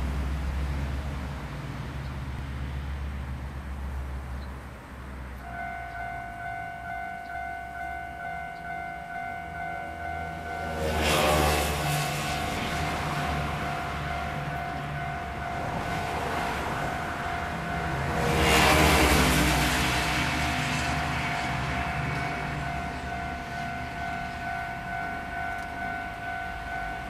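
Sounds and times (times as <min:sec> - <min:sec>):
loud rushing noise: 0:10.4 - 0:26.1.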